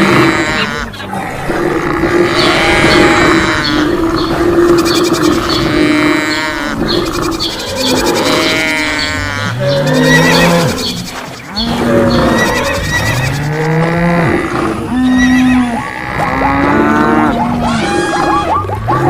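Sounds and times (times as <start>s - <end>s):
long low cartoon animal calls: 0.0s - 10.9s, 11.5s - 19.0s
higher cartoon animal cries: 8.3s - 10.8s.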